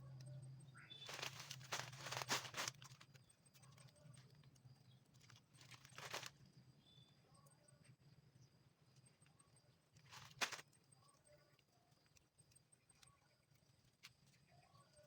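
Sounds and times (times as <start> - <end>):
stalks rustling and scraping: 1.0 - 4.4, 5.1 - 6.4, 10.0 - 10.6.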